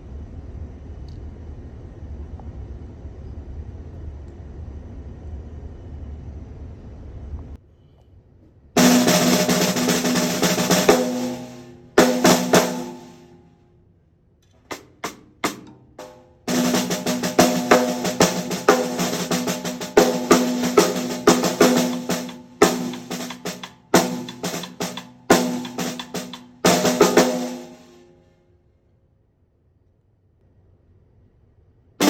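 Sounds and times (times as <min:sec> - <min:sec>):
snare drum strokes: 0:08.8 - 0:13.4, 0:14.7 - 0:28.1.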